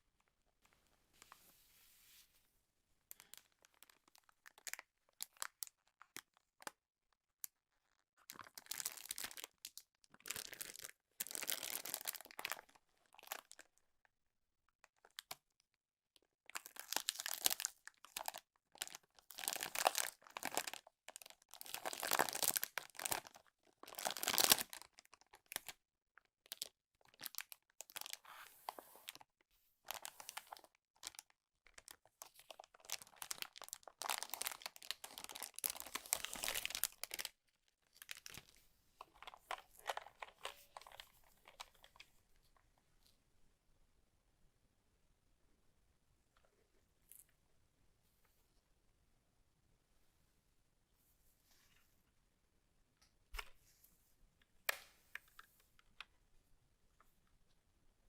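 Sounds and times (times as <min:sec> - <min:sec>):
packaging wrap crinkling and tearing: 0:08.3 - 0:13.7, 0:16.5 - 0:25.8, 0:29.9 - 0:38.6.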